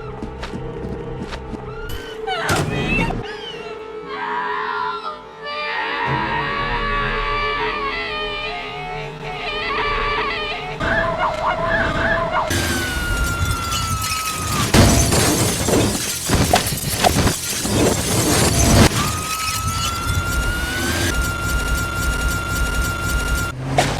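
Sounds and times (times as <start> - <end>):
crashing and shattering: 12.5 - 23.6
high electronic tone: 12.5 - 23.6.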